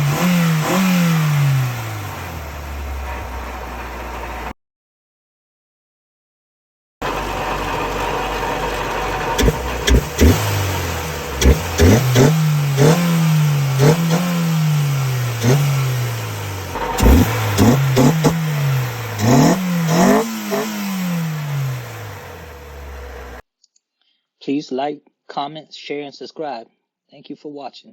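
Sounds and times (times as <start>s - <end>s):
car engine revving: 0.0s - 4.5s, 7.0s - 23.4s.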